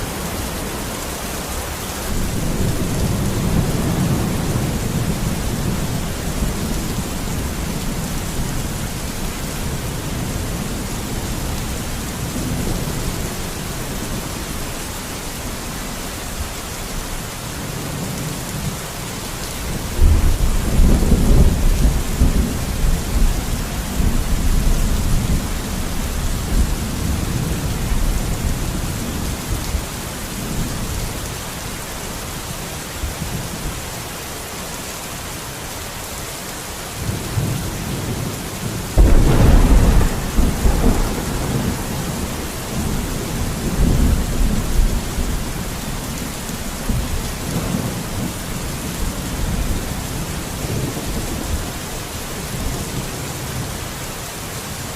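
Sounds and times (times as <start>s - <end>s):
heavy rain: 0.0s - 54.9s
rolling thunder: 38.9s - 51.6s
loud thunderclap: 39.0s - 45.4s.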